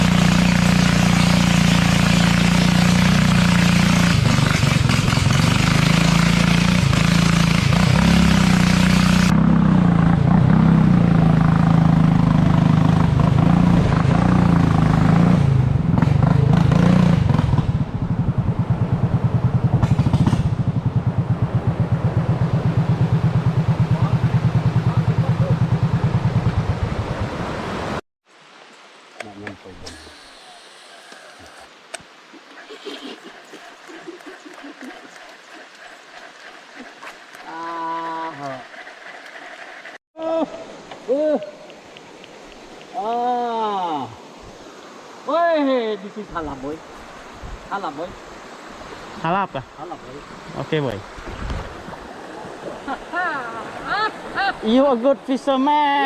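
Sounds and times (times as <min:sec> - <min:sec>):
small boat engine running: 0:00.0 - 0:27.1, 0:32.8 - 0:40.0.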